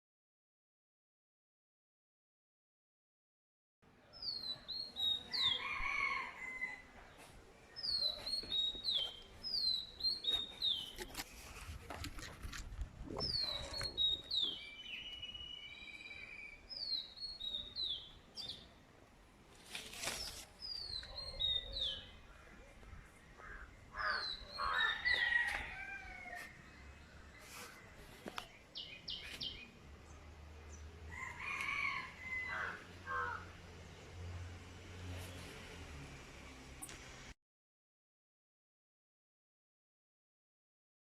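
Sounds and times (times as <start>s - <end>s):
high downward-sliding bird chirps: 13.1s - 18.7s.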